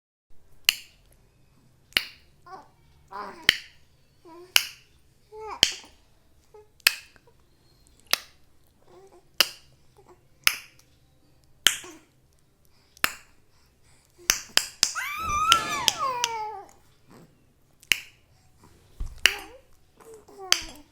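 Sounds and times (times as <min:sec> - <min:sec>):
sharp finger snap clicks: 0:00.6 - 0:01.1, 0:01.9 - 0:02.3, 0:03.4 - 0:03.8, 0:04.5 - 0:04.9, 0:05.6 - 0:06.0, 0:06.8 - 0:07.3, 0:08.1 - 0:08.4, 0:09.4 - 0:09.8, 0:10.4 - 0:10.9, 0:11.6 - 0:12.0, 0:13.0 - 0:13.4, 0:14.2 - 0:15.0, 0:17.8 - 0:18.2, 0:19.2 - 0:19.6, 0:20.5 - 0:20.9
baby squealing: 0:14.9 - 0:16.7.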